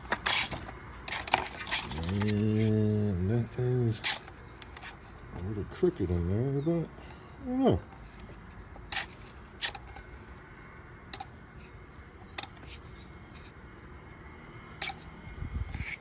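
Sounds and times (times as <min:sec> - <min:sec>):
small parts clicking and tapping: 0:12.2 - 0:12.7.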